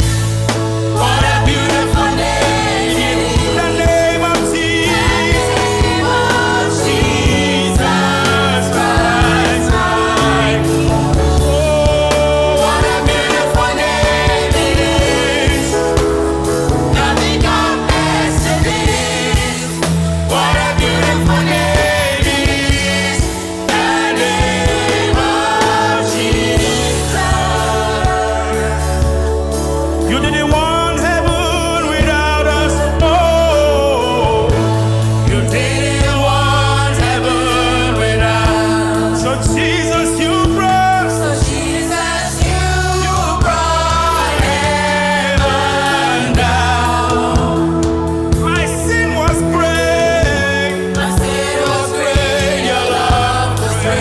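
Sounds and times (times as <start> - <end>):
drum hits: 0.0 - 30.2
band playing chords over a beat: 0.0 - 54.0
people singing: 0.0 - 54.0.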